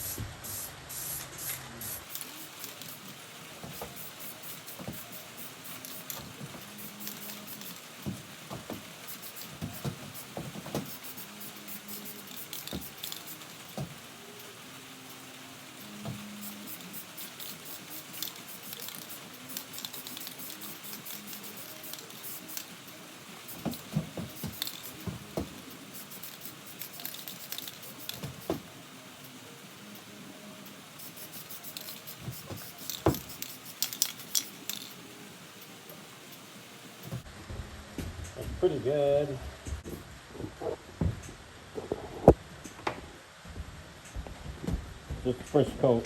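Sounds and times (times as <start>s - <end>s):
spray paint can hissing: 0.0s - 37.3s.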